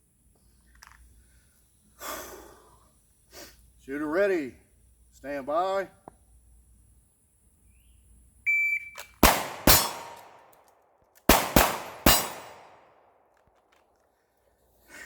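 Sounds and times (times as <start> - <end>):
shot timer beep: 8.5 - 9.0
pistol shots: 9.2 - 13.2.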